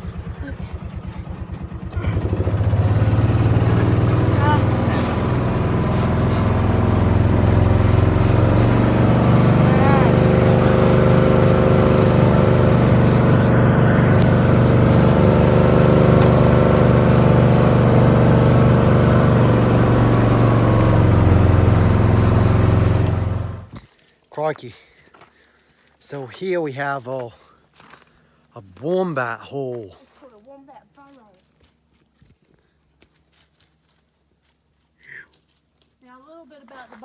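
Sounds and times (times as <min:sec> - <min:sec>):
vehicle engine running while driving: 0:00.0 - 0:23.8.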